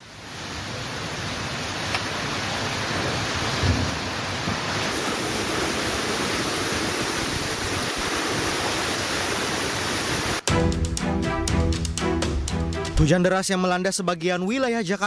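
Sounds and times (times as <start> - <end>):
heavy rain hissing: 0.0 - 10.4
music with chords and steady beat: 10.4 - 13.0.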